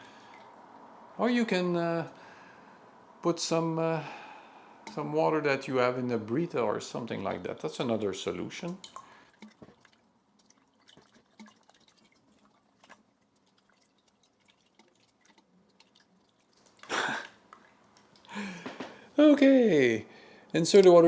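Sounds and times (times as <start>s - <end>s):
water dripping: 0.0s - 0.9s, 4.8s - 5.4s, 6.0s - 19.0s
small taps: 18.0s - 19.0s.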